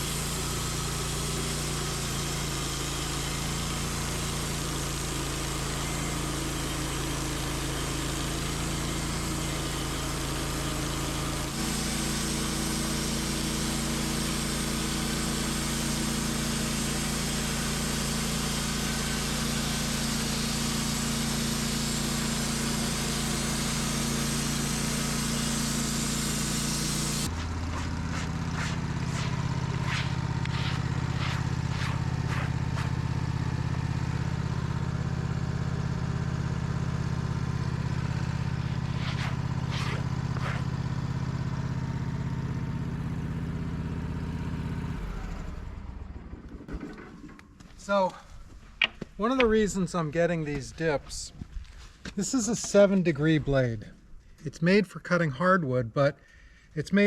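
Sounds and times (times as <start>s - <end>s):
saw blade cutting log hiss: 0.0s - 33.4s, 38.4s - 42.6s
sawmill engine running: 0.0s - 54.4s.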